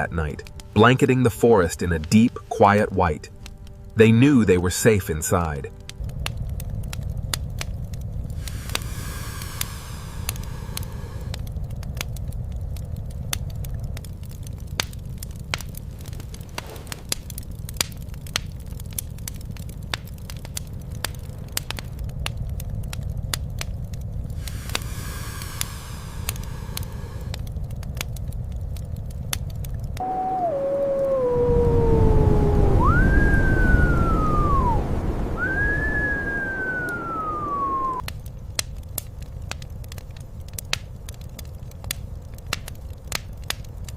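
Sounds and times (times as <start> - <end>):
wood fire crackling and popping: 0.0 - 43.9
low rumble: 5.7 - 14.5, 20.7 - 38.1
falling whistling tone: 30.0 - 38.0.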